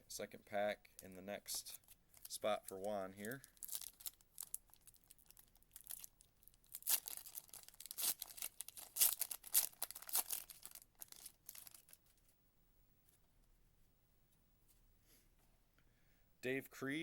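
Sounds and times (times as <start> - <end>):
card pack wrapper tearing: 1.8 - 12.0.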